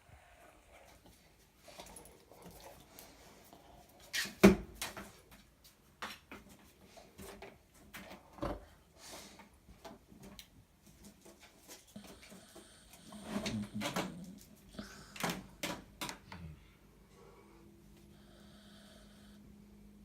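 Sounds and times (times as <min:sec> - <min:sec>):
dog snoring: 0:11.9 - 0:15.7, 0:18.1 - 0:19.8.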